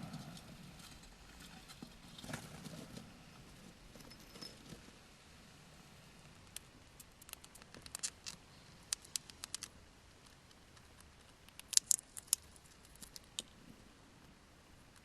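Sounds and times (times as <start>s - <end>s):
hamster gnawing and crunching: 5.8s - 14.3s.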